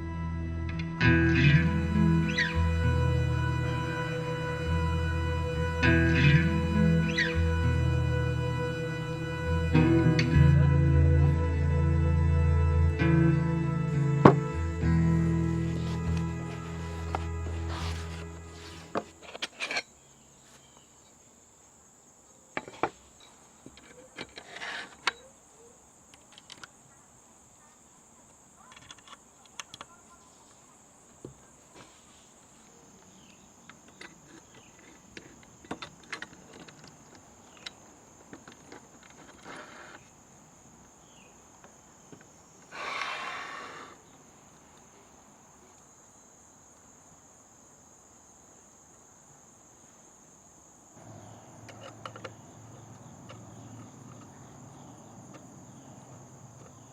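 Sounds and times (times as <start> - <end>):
crickets chirring: 1.4 - 12.0, 13.5 - 56.9
rustling noise: 14.4 - 21.0, 30.2 - 33.3.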